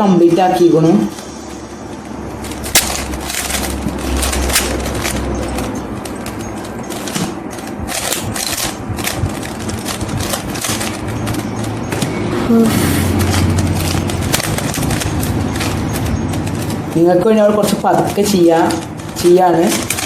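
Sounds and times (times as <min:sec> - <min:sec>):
plastic puzzle cube clicking: 0:02.7 - 0:11.9.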